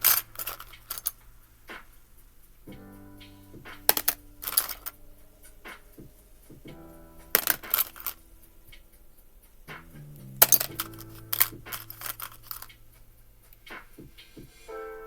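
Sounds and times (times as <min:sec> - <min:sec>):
puzzle pieces clicking: 0:00.0 - 0:01.2, 0:03.9 - 0:05.0, 0:07.4 - 0:08.2, 0:10.2 - 0:12.8
soft background music: 0:00.0 - 0:15.0.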